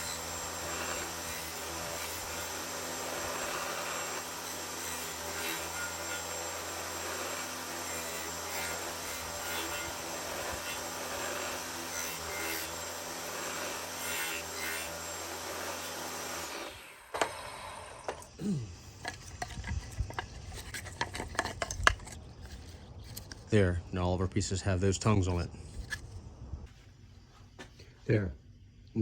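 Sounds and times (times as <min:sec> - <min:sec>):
saw machine running: 0:00.0 - 0:18.4.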